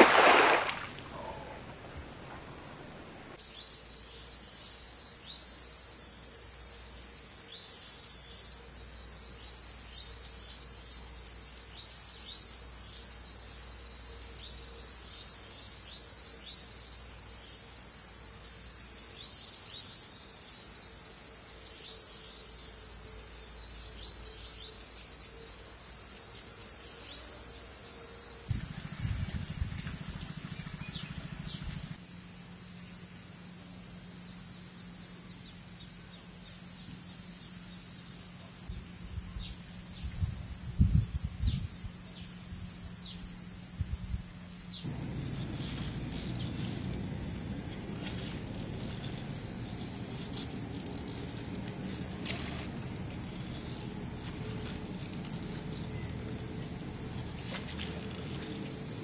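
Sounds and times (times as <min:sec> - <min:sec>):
low buzz: 0:28.5 - 0:59.0
insect trilling: 0:40.8 - 0:59.0.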